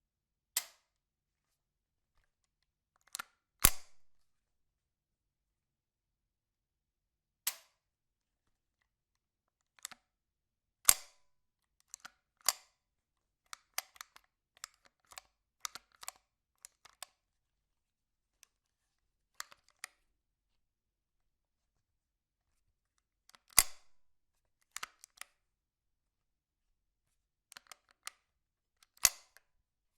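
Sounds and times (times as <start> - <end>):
rifle mechanical clicks: 23.4 - 23.9.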